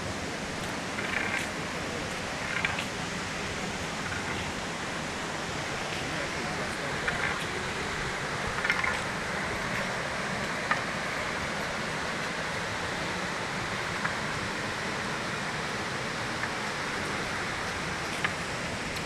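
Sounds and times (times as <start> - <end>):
rush of flowing water: 0.0 - 19.0
faint clicks: 0.6 - 3.0, 8.5 - 9.1, 18.0 - 19.0.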